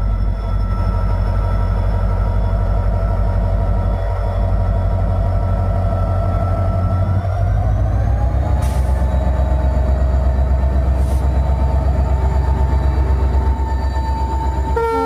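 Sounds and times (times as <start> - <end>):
locomotive engine humming: 0.0 - 15.0
locomotive horn: 14.7 - 15.0.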